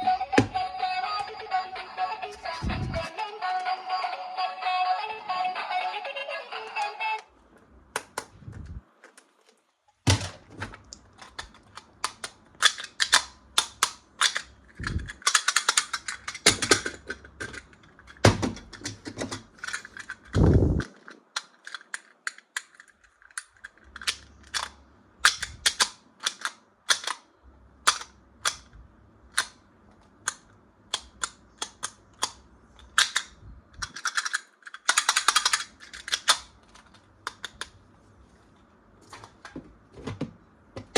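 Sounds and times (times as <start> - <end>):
plastic toys clicking and snapping: 7.9 - 8.3, 10.8 - 37.8.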